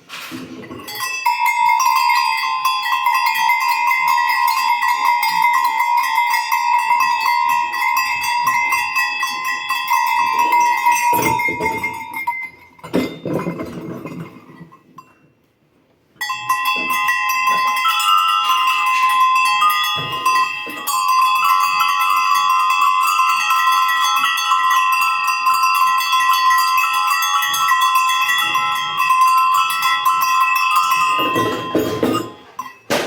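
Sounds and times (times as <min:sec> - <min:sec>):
metal livestock bells jangling: 0:00.3 - 0:15.2, 0:16.2 - 0:32.9.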